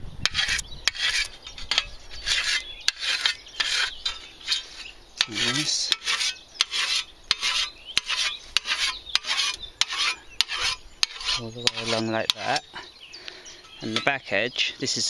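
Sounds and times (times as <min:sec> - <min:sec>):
sharpening stone rasping on blade: 0:00.3 - 0:12.6.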